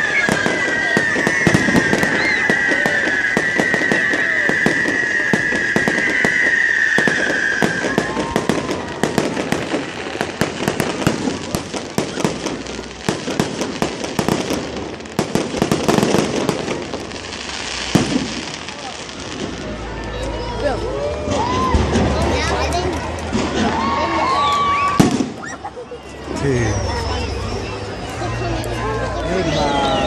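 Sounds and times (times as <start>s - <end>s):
high wavering whistle: 0.0s - 9.0s
fireworks crackling and banging: 0.0s - 29.2s.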